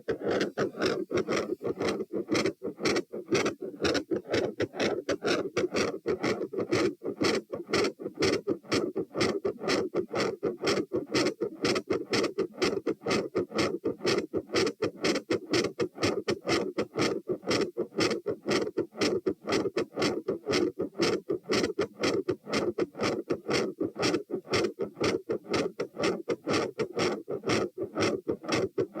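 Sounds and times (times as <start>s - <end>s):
fast heartbeat through stethoscope: 0.0s - 8.4s.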